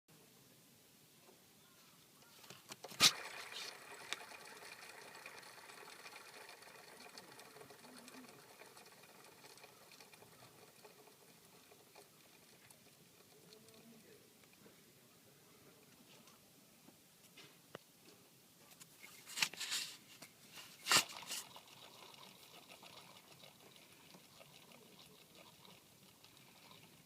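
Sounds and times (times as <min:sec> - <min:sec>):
pulley bearing whirring: 0:02.7 - 0:13.8.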